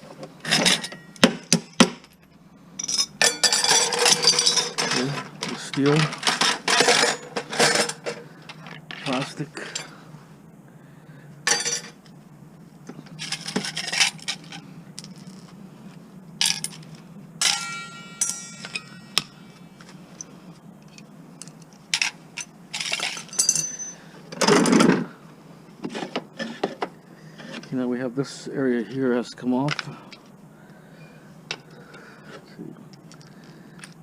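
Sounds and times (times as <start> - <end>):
metal parts clinking and clattering: 0.4 - 9.9, 11.5 - 12.0, 13.1 - 15.5, 16.4 - 25.0.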